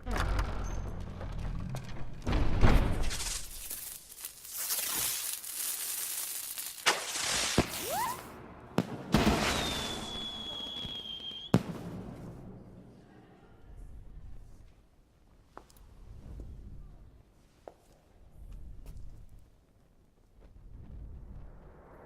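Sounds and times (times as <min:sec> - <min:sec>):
fireworks hissing and crackling: 0:03.0 - 0:12.1
fireworks bangs: 0:04.5 - 0:13.0
rising firework whistle: 0:07.6 - 0:08.4, 0:09.2 - 0:11.6
high steady whistle: 0:09.4 - 0:11.6.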